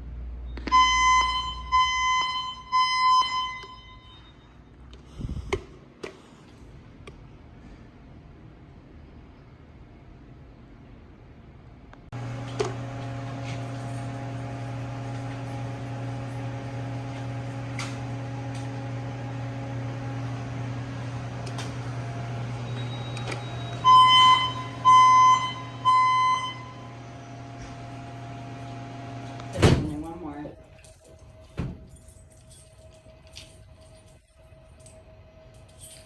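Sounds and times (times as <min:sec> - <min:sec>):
fire alarm beeps: 0:00.6 - 0:04.6, 0:22.4 - 0:27.6
steady hum: 0:12.1 - 0:29.9.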